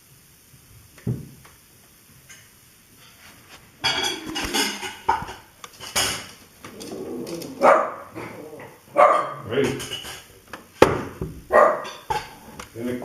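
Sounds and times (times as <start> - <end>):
hard objects clattering: 3.8 - 7.6
thump: 10.8 - 11.4.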